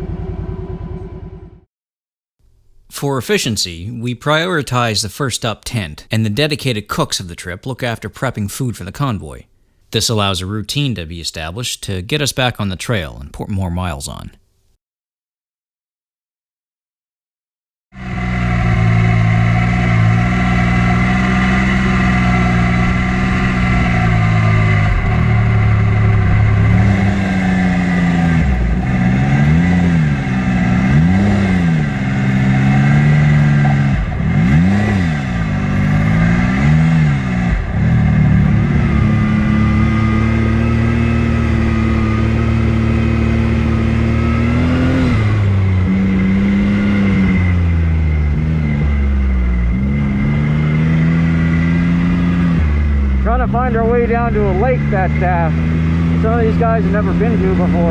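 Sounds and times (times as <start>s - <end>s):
off-road vehicle engine revving: 18.0s - 57.9s.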